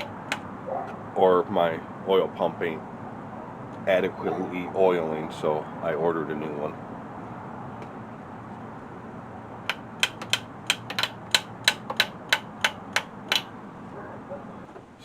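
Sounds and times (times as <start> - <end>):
steady background hum: 0.0 - 15.0
sharp clicks: 9.7 - 13.5.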